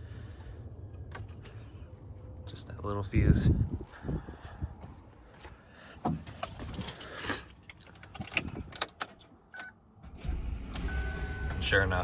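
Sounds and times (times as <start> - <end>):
keys jangling: 6.2 - 9.3
short electronic beep: 10.8 - 11.8.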